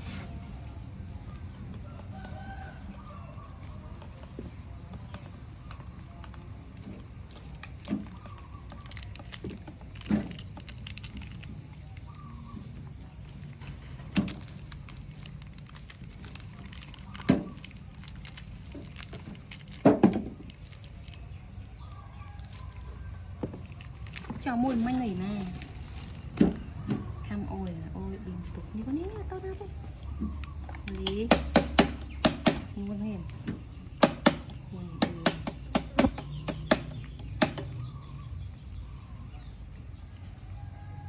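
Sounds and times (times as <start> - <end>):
short sharp knocks: 31.3 - 32.8.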